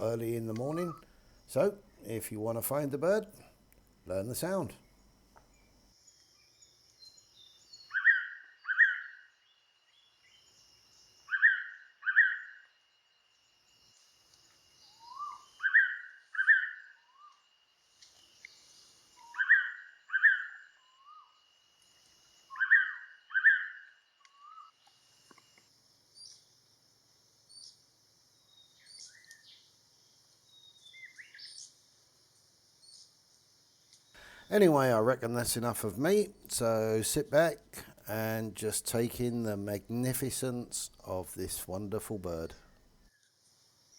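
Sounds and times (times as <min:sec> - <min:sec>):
faint bird chirps: 0:03.2 - 0:26.5, 0:27.5 - 0:35.0.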